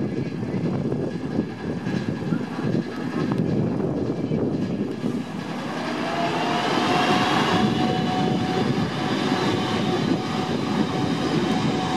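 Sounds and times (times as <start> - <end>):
train wheels rumbling: 0.0 - 11.9.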